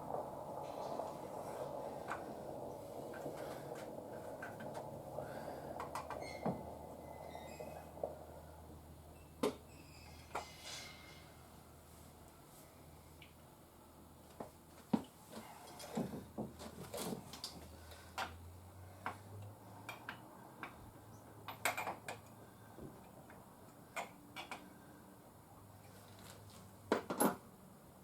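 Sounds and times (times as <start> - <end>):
faint low hum: 0.0 - 14.5.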